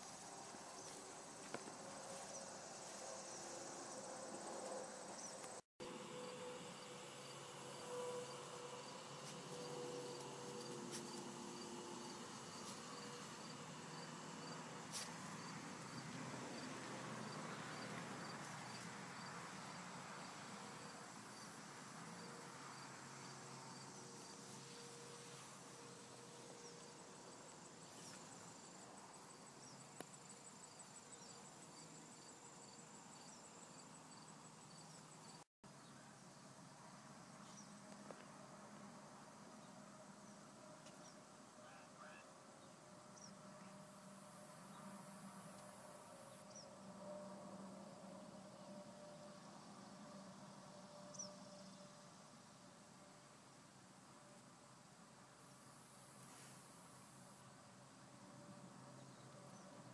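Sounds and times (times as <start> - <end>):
insects chirping: 0.0 - 35.5.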